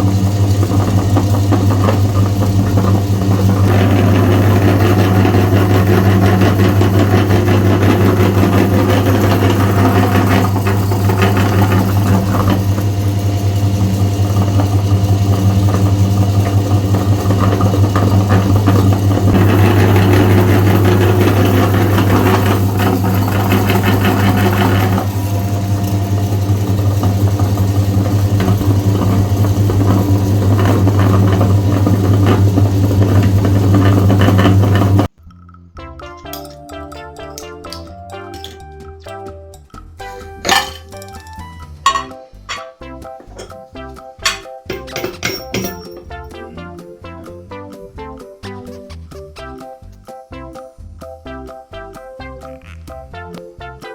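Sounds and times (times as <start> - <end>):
electric meat grinder grinding: 0.0 - 35.2.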